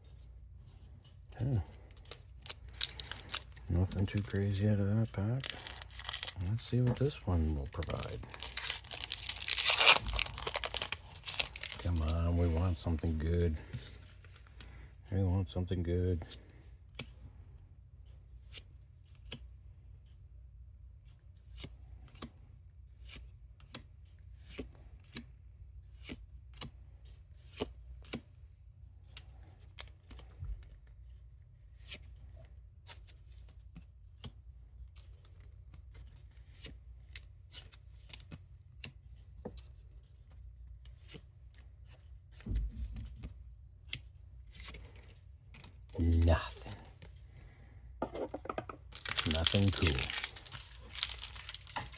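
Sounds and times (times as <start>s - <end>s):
cards snapping and rustling: 2.0s - 4.6s, 5.4s - 12.2s, 48.2s - 51.9s.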